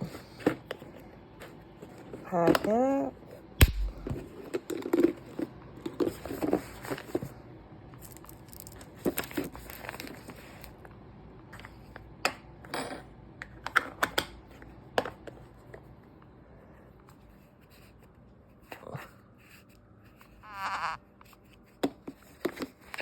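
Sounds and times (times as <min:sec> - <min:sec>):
plastic wrappers crinkling: 0:08.0 - 0:10.8.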